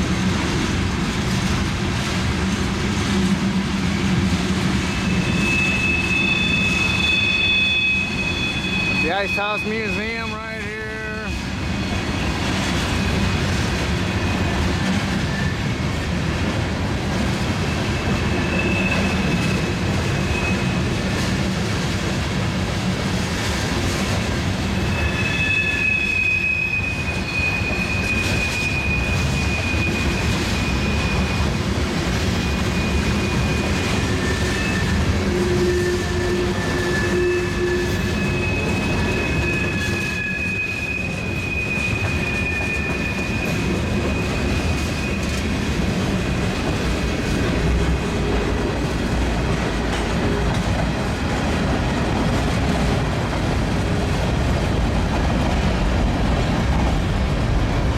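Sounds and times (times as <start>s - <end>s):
train wheels rumbling on rail: 0.0s - 57.9s
wheel squeal: 4.8s - 10.0s, 11.1s - 13.4s, 14.0s - 15.9s, 17.6s - 20.9s, 24.7s - 31.6s, 32.3s - 46.8s.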